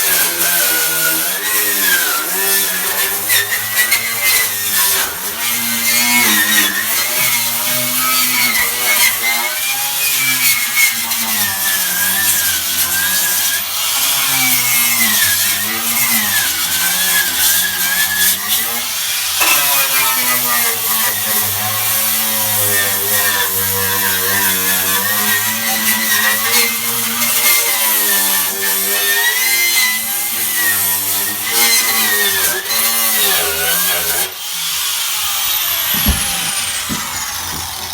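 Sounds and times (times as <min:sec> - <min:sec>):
power tool running: 0:00.0 - 0:37.9.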